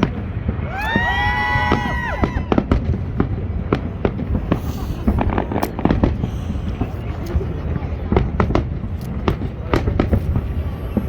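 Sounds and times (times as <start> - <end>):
fireworks whistling: 0.0 - 7.4
fireworks cracking and banging: 0.0 - 11.0.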